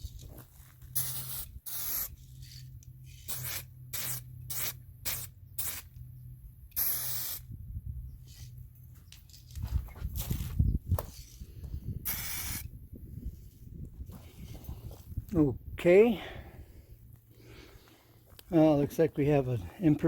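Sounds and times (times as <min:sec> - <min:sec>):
spray paint can hissing: 0:01.0 - 0:02.5, 0:03.1 - 0:06.0, 0:06.8 - 0:07.5, 0:12.0 - 0:12.7.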